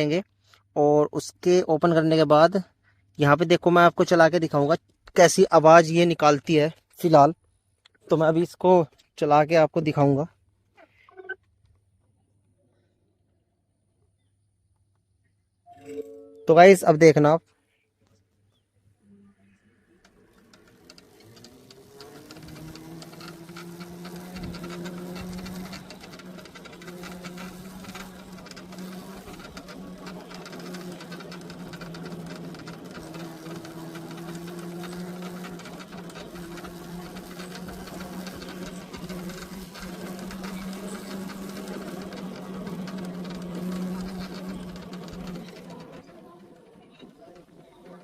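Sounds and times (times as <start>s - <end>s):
electric scooter humming: 19.7s - 48.0s
fast buzzing rattle: 20.1s - 48.0s.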